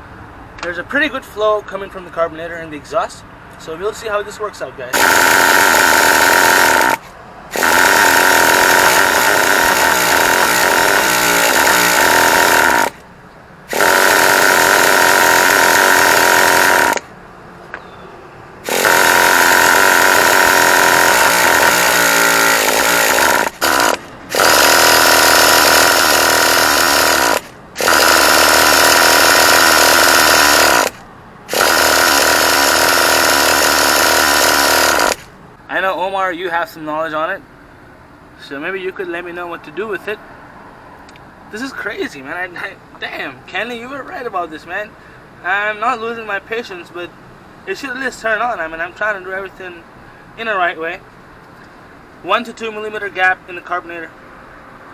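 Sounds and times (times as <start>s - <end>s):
electric starter motor whine: 5.0s - 13.0s, 13.7s - 17.1s, 18.6s - 35.3s.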